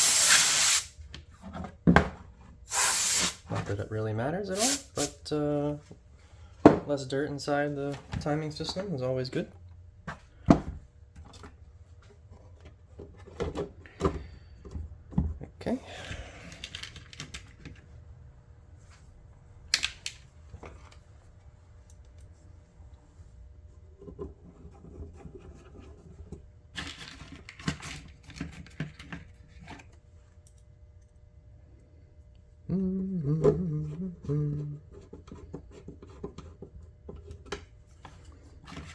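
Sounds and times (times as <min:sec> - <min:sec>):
steady low hum: 0:02.4 - 0:38.9
plastic parts clicking and scraping: 0:16.4 - 0:17.9, 0:24.0 - 0:30.0, 0:34.8 - 0:38.9.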